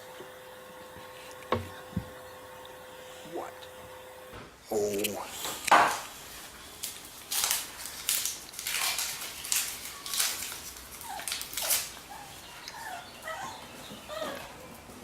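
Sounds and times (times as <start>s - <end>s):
puppies squeaking: 11.0s - 14.7s.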